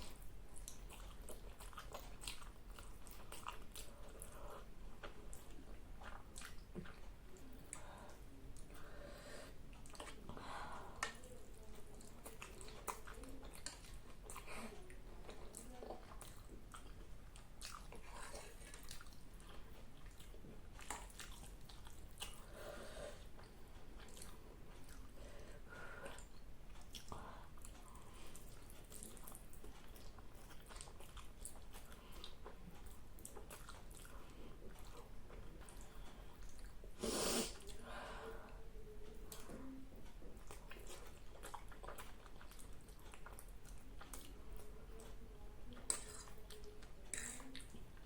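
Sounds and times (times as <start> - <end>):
chewing and biting noodles: 0.0 - 7.5.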